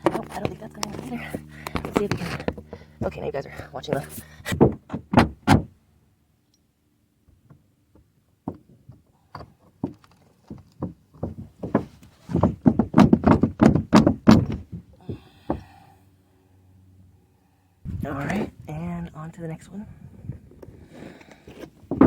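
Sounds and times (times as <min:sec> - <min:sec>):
loud knocks and thumps: 0:04.5 - 0:05.7, 0:10.5 - 0:15.6.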